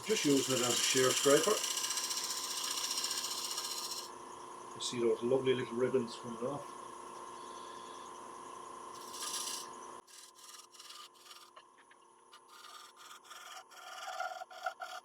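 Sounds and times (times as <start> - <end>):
hissing cut: 0.0 - 4.1
scraper rubbing spinning wood: 0.0 - 4.1, 9.0 - 11.6, 12.4 - 15.0
wood lathe running: 0.0 - 4.1, 9.0 - 11.5, 12.4 - 15.0.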